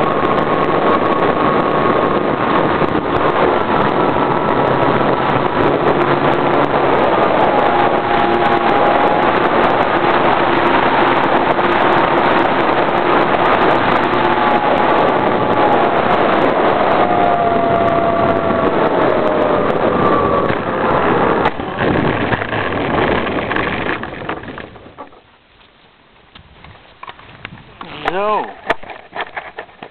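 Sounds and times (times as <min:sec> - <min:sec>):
model airplane engine running: 0:00.0 - 0:24.9
wind rushing over microphone: 0:00.0 - 0:25.5, 0:26.2 - 0:29.9.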